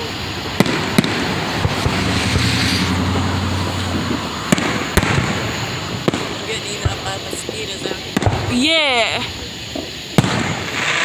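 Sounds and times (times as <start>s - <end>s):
firework shell bangs: 0.0s - 8.8s, 9.7s - 11.0s
fireworks crackling: 0.0s - 11.0s
low rumble: 0.8s - 6.2s.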